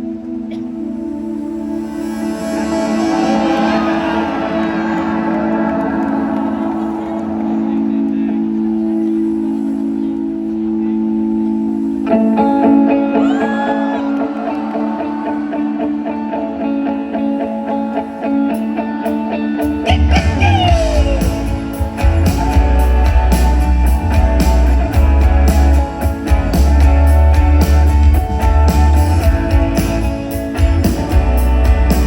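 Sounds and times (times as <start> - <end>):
sliding electric guitar notes: 0.0 - 32.0
live band music: 18.4 - 32.0
drums and bass: 19.9 - 32.0.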